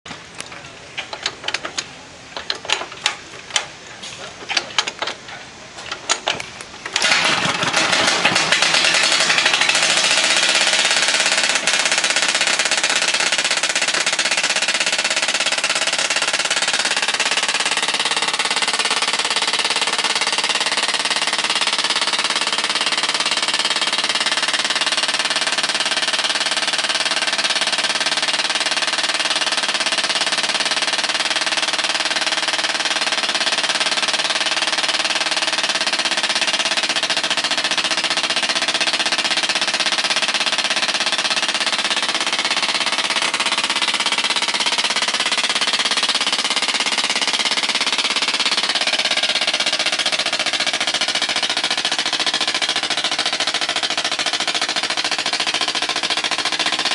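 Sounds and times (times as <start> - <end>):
diesel engine and sawmill running: 0.1 - 12.4
sharp mechanical knocks: 0.1 - 17.6.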